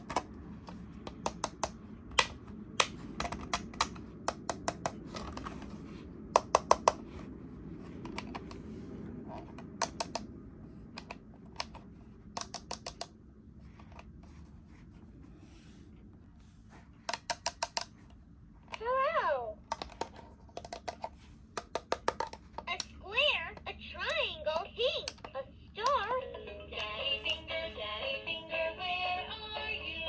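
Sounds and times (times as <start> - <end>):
low steady hum: 0.0 - 30.0
plastic toys clicking and tapping: 12.3 - 13.1, 17.1 - 18.0, 19.7 - 24.2, 24.8 - 26.1.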